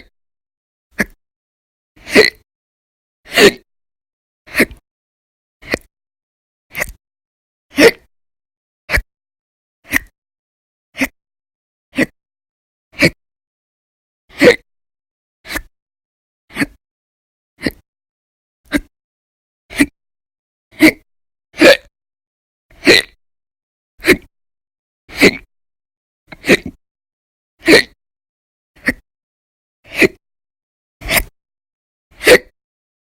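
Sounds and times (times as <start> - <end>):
person hiccuping loudly: 2.0 - 2.4, 3.3 - 3.6, 7.7 - 8.1, 14.3 - 14.6, 20.8 - 21.0, 21.6 - 21.9, 22.8 - 23.2, 25.1 - 25.5, 26.4 - 26.8, 27.6 - 28.0, 32.2 - 32.5.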